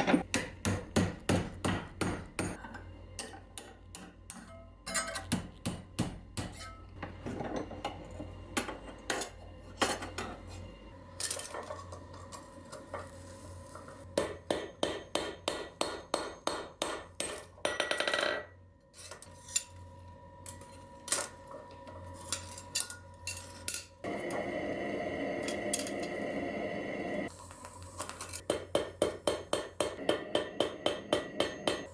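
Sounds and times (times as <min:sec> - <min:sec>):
hammer striking ringing steel: 0:28.5 - 0:31.9.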